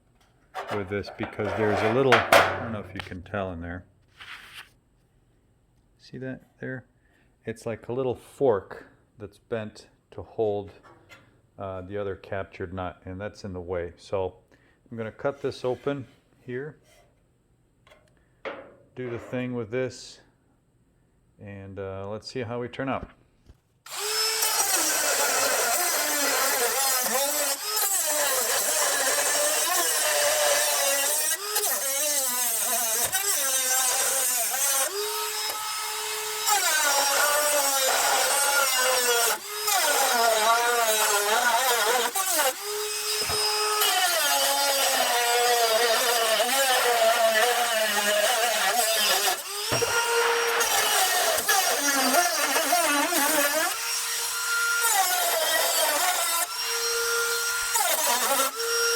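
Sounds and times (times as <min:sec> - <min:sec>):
power tool cutting sheet metal: 0:23.9 - 0:58.9.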